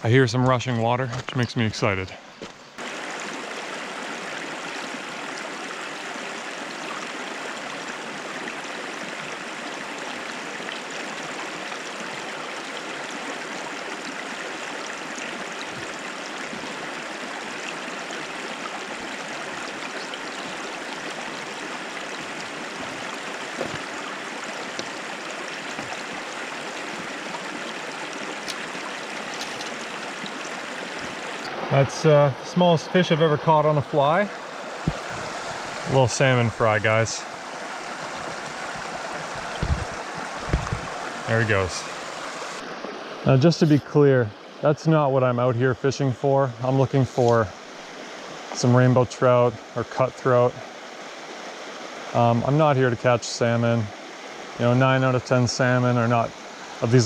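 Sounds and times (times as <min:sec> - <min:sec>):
creek rushing over rocks: 0:00.0 - 0:45.3.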